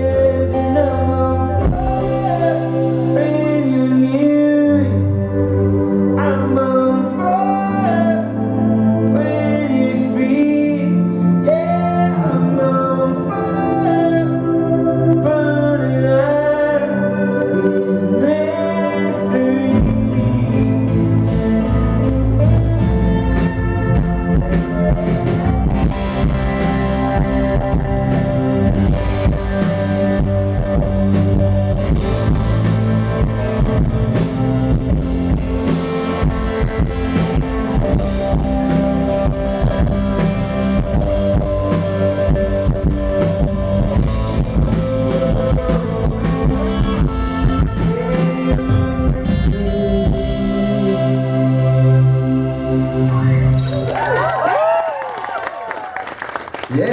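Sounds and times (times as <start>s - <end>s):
rock band playing: 0.0s - 56.9s.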